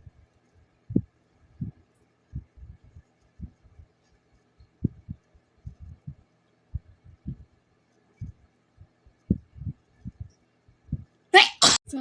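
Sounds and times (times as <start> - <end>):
low muffled thumps: 0.9 - 1.8, 2.4 - 3.9, 4.8 - 7.5, 8.2 - 11.1.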